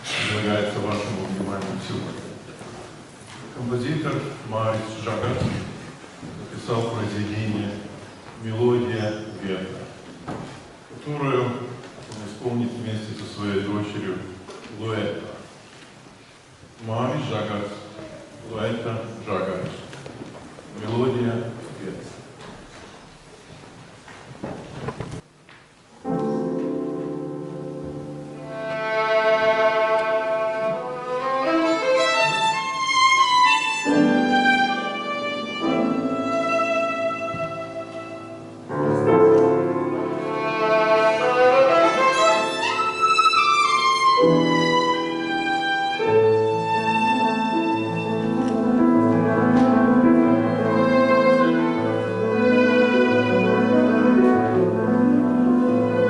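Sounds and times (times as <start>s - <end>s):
solo violin melody: 26.2s - 56.0s.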